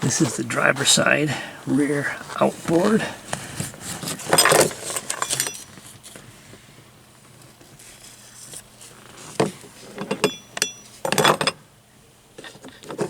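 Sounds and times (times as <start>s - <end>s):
small metal parts clinking: 4.2s - 5.7s.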